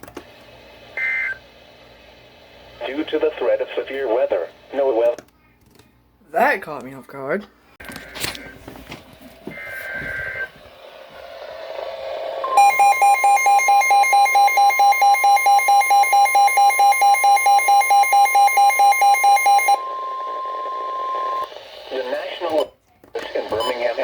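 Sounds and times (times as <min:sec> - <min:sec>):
radio hiss: 0:02.7 - 0:05.2, 0:21.1 - 0:24.0
rapid alarm beeps: 0:12.4 - 0:21.5
steady warning alarm tone: 0:12.4 - 0:21.5
two-tone data burst: 0:12.4 - 0:21.5.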